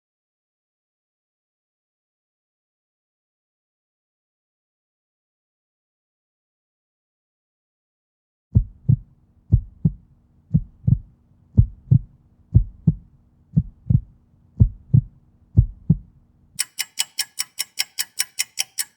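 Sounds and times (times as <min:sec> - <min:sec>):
heartbeat thumps: 0:08.6 - 0:16.2
faint steady hum: 0:08.6 - 0:16.6
fast clock ticking: 0:08.6 - 0:18.9.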